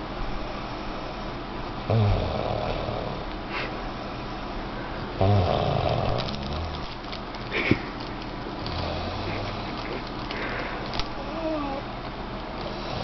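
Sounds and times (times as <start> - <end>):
person snoring: 1.9 - 3.2, 5.2 - 6.8, 8.6 - 9.7, 12.7 - 13.0.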